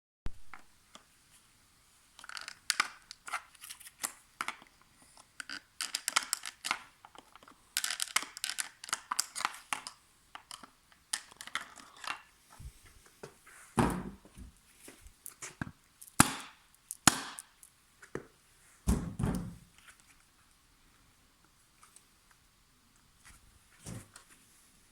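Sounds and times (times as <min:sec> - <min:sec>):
plastic clicks and scrapes: 0:02.2 - 0:12.3.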